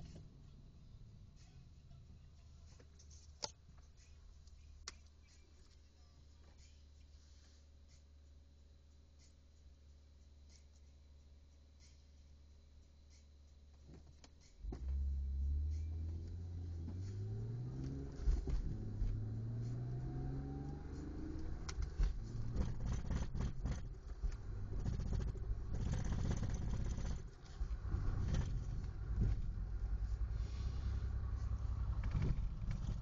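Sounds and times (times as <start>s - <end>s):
car engine accelerating: 14.6s - 33.0s
irregular knocks and thumps: 17.8s - 19.3s, 21.7s - 29.6s.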